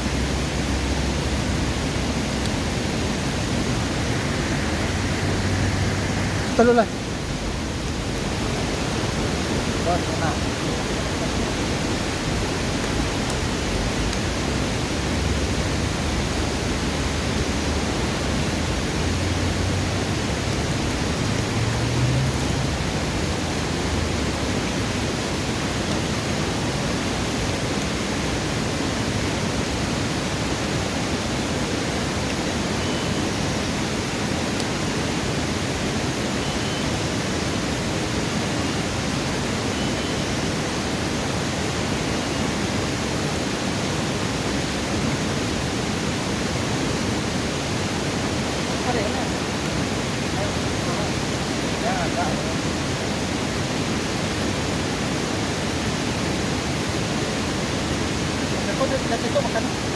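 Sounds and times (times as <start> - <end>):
river water rushing: 0.0 - 59.9
low rumble: 0.7 - 8.8.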